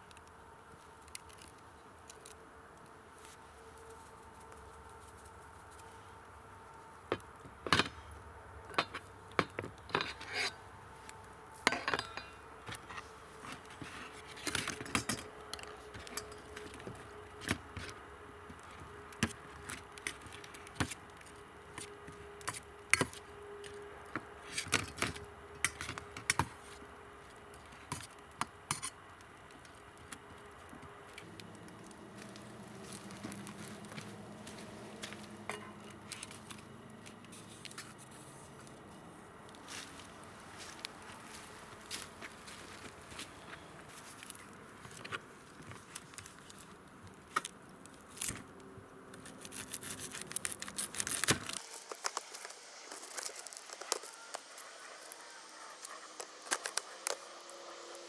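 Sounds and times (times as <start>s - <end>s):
faint steady hum: 0.0s - 58.0s
metal cutlery clattering: 11.7s - 13.0s, 14.4s - 16.8s.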